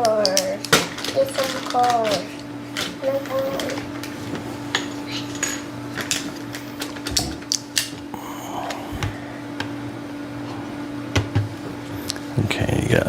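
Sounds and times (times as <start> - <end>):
steady low hum: 0.0 - 13.0
plastic toy parts clattering: 0.2 - 3.9.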